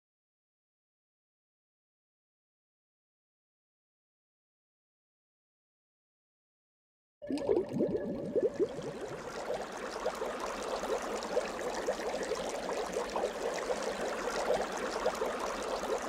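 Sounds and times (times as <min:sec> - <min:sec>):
water bubbling and gurgling: 0:07.2 - 0:16.0.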